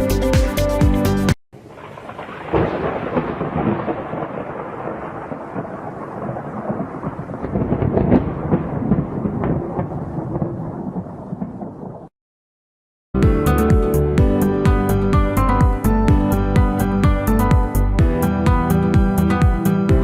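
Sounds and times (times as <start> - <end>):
rain falling: 1.6 - 12.1
rolling thunder: 1.6 - 12.1
sharp thunder crack: 1.6 - 12.1.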